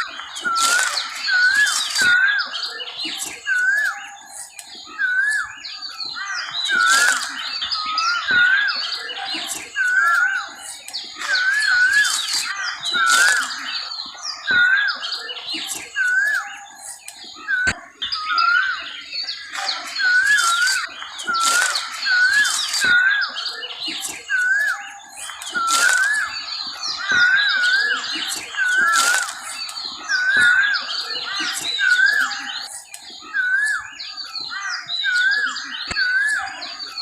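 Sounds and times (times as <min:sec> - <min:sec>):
bird whistled note: 0:00.0 - 0:37.0
songbirds chirping and twittering: 0:00.0 - 0:37.0
sharp clicks: 0:00.2 - 0:02.2, 0:19.5 - 0:33.8.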